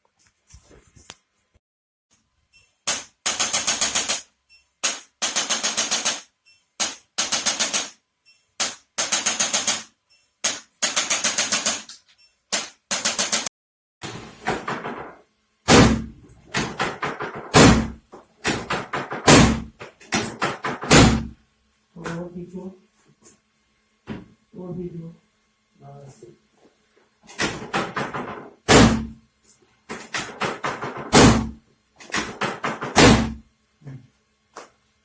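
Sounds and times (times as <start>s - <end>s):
percussive device rapid taps: 8.6s - 11.9s
knocks and thumps: 14.1s - 21.3s, 27.4s - 29.2s.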